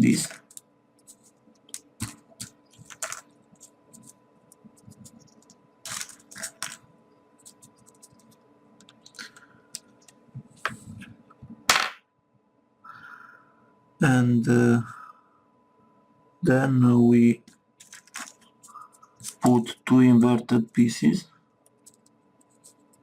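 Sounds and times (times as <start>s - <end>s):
faint steady hum: 0.0s - 23.0s
paper clicks and rustles: 0.1s - 4.2s, 4.8s - 6.8s, 17.8s - 19.5s.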